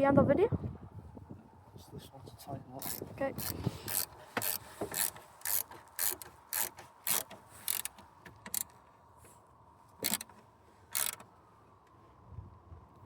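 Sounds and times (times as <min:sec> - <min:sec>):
ratchet spanner ratcheting: 0:02.8 - 0:08.8, 0:10.0 - 0:11.2.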